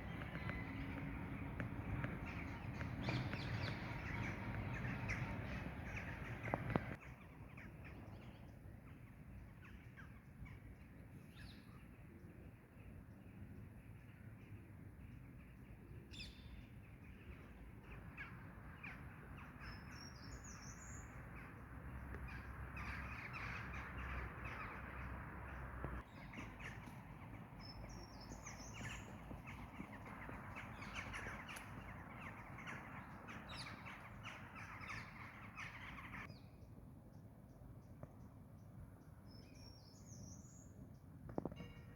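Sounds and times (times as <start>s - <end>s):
bird chirping: 0.0s - 7.0s, 27.6s - 36.6s
birds harsh calls: 0.0s - 7.0s, 27.8s - 36.3s
low background noise: 0.0s - 9.6s.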